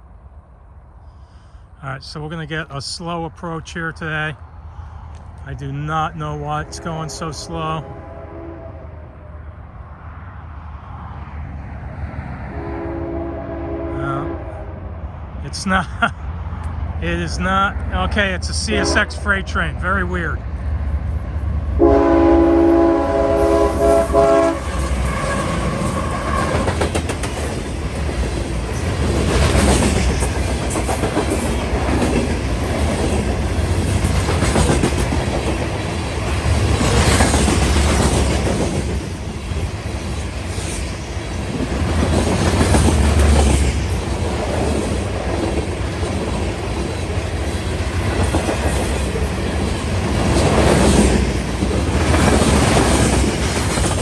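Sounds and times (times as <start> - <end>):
freight train rumbling past: 0.0 - 54.0
train horn: 6.4 - 9.2, 12.4 - 14.8, 18.6 - 19.5, 21.8 - 26.8
train wheels clacking on rails: 19.8 - 54.0.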